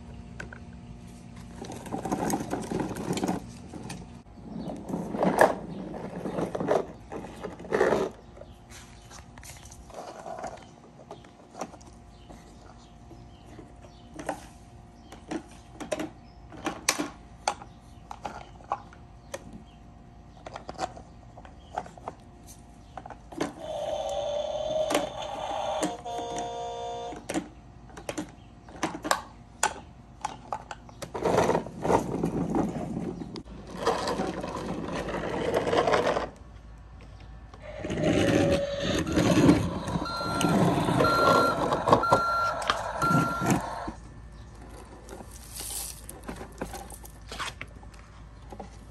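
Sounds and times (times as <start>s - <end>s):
repeating beep: 38.4s - 43.9s.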